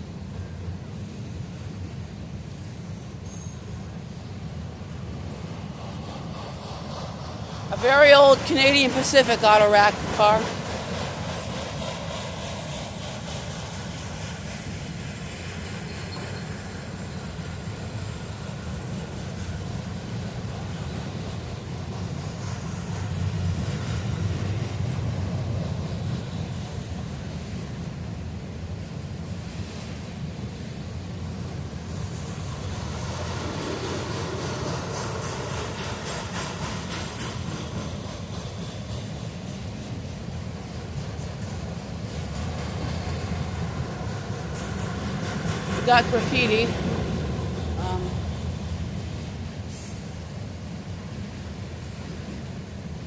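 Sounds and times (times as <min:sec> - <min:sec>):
freight train wheels rumbling: 0:00.0 - 0:53.0.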